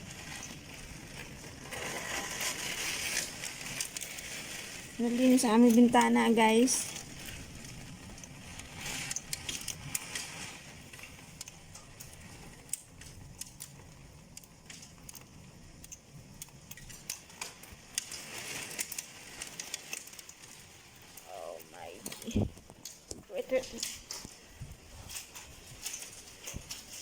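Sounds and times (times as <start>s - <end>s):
heavy rain and wind: 0.0s - 13.2s
raindrops ticking on glass: 3.0s - 26.3s.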